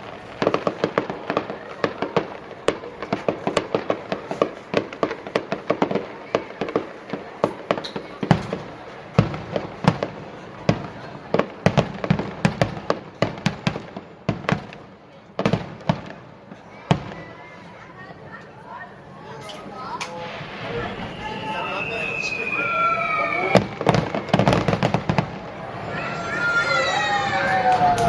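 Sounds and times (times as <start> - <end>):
deep fireworks booms: 0.0 - 17.4, 20.2 - 28.0
fireworks bangs and crackles: 0.0 - 28.0.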